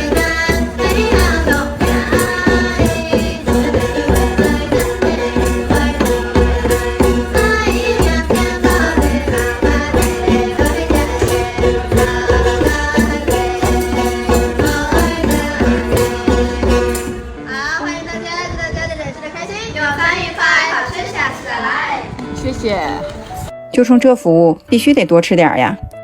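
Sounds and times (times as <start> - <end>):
shaker percussion beat: 0.0 - 17.3
folk music with singing: 0.0 - 23.6.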